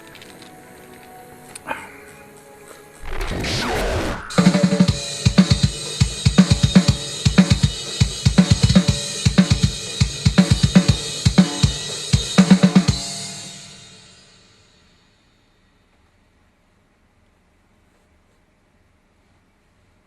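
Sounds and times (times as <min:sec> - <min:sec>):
drum kit played fast: 0:03.0 - 0:14.6.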